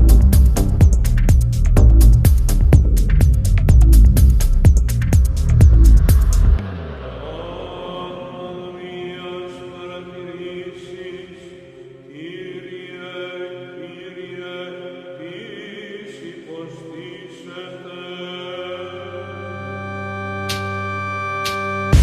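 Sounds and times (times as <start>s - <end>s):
droning chant-like music: 5.3s - 21.0s.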